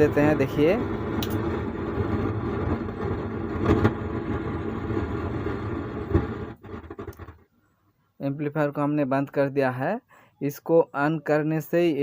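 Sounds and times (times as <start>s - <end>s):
low hum: 0.0s - 7.4s
speaker crackling buzz: 0.0s - 7.5s.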